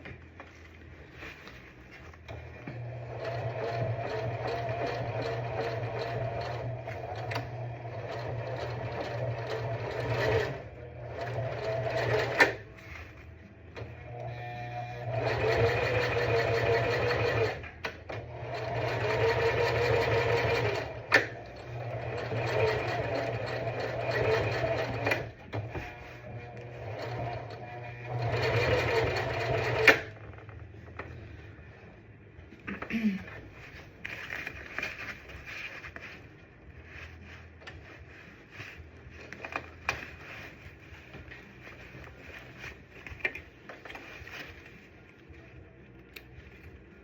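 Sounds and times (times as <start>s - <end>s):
sewing machine stitching: 2.3s - 12.7s, 14.1s - 30.2s.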